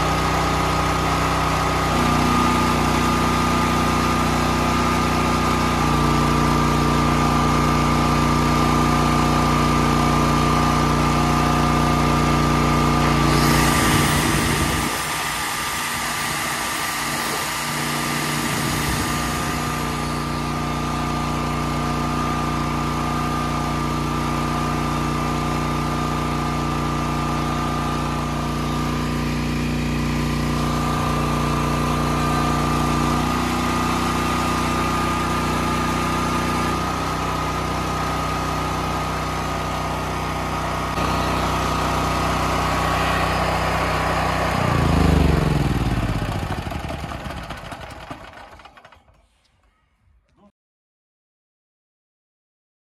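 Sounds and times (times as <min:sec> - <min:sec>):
portable generator engine running: 0:00.0 - 0:49.7
hiss: 0:13.3 - 0:20.6.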